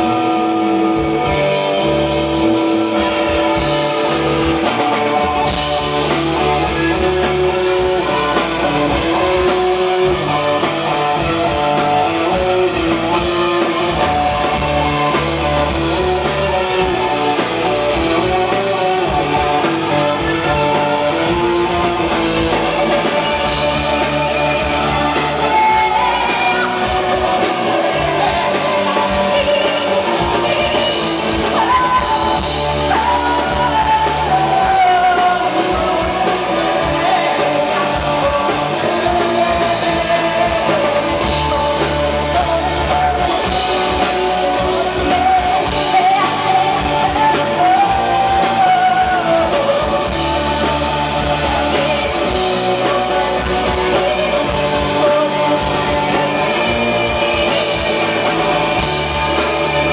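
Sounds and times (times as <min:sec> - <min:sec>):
live rock band playing: 0:00.0 - 0:59.9.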